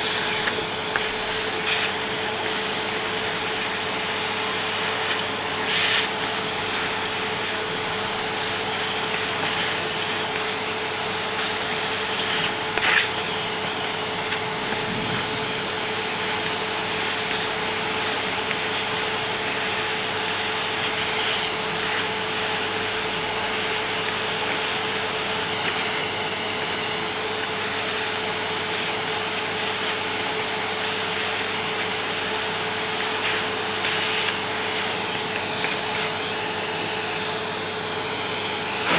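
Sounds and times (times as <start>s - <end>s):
vacuum cleaner motor whine: 0.0s - 38.9s.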